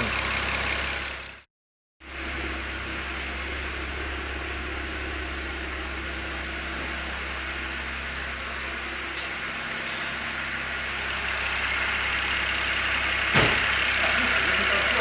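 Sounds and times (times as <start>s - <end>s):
car engine idling: 0.0s - 1.4s, 2.1s - 15.0s
sharp thump: 13.3s - 13.7s.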